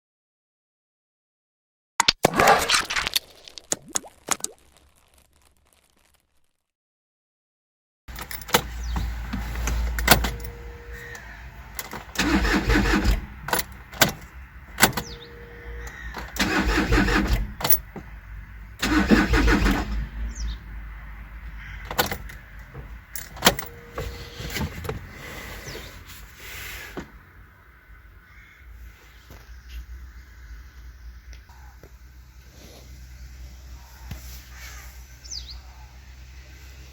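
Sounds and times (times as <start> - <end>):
engine cranking by starter: 8.1 - 17.9, 18.8 - 20.5.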